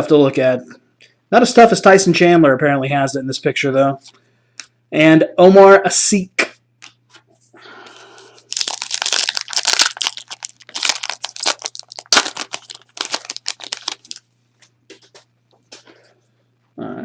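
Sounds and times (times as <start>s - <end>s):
plastic wrapper crinkling and tearing: 8.4s - 14.3s.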